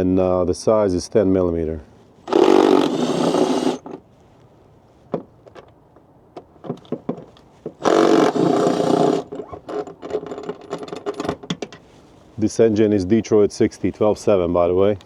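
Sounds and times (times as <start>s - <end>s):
power tool spinning bolts: 2.3s - 4.0s, 6.7s - 11.8s.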